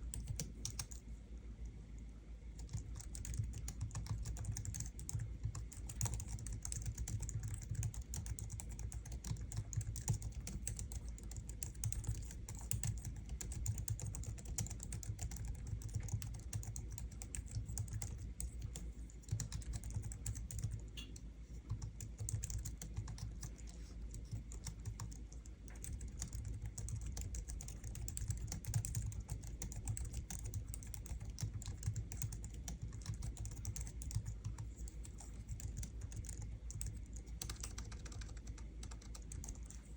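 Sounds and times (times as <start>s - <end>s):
keyboard typing: 0.0s - 1.0s, 2.6s - 39.9s.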